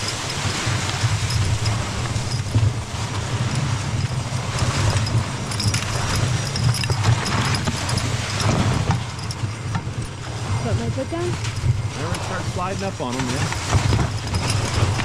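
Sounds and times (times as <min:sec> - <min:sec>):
low rumble: 0:00.0 - 0:15.0
sled runners scraping over snow: 0:00.0 - 0:15.0
harness hardware clinking: 0:03.5 - 0:10.2, 0:13.1 - 0:15.0.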